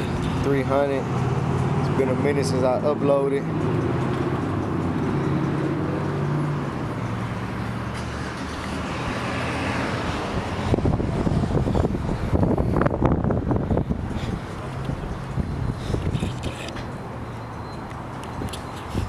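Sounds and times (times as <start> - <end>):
car engine running: 0.0 - 7.9
traffic noise: 0.0 - 19.0
wind buffeting microphone: 9.0 - 17.0, 18.2 - 19.0.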